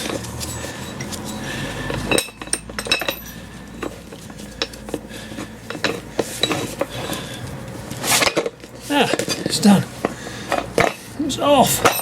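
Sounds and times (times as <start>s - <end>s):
steel tools clinking: 0.0s - 12.0s.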